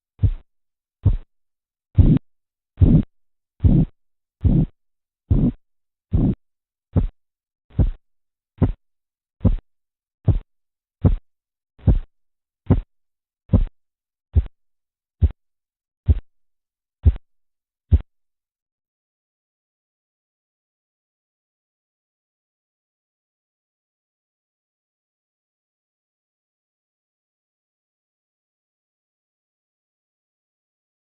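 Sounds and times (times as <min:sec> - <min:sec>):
pulse thumps through stethoscope: 0:00.2 - 0:00.4, 0:01.0 - 0:01.3, 0:01.9 - 0:02.2, 0:02.8 - 0:08.0, 0:08.6 - 0:08.8, 0:09.4 - 0:09.6, 0:10.2 - 0:11.2, 0:11.8 - 0:12.1, 0:12.7 - 0:12.9, 0:13.5 - 0:13.7, 0:14.4 - 0:14.6, 0:15.2 - 0:15.4, 0:16.1 - 0:16.3, 0:17.0 - 0:17.3.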